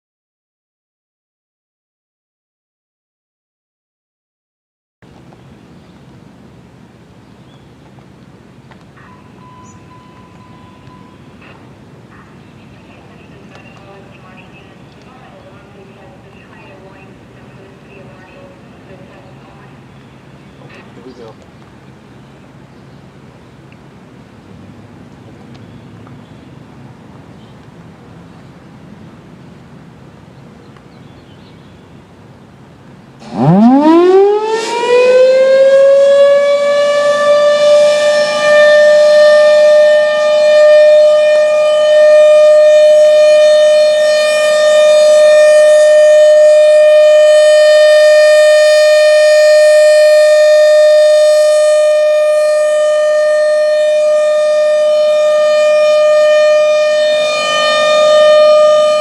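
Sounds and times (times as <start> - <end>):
tornado siren winding up: 33.2 - 59.0.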